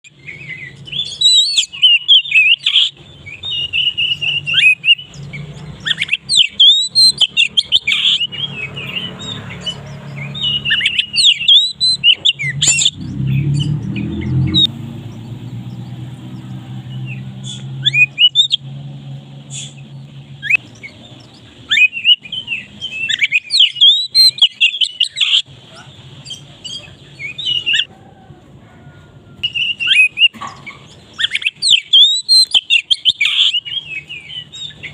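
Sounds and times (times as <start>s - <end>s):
bird singing: 0.0s - 34.9s
low hum: 12.2s - 21.7s.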